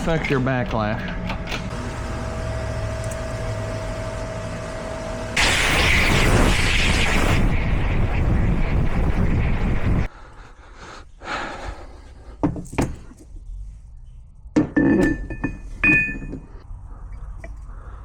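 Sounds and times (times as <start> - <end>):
shop tool running: 0.0 - 8.0.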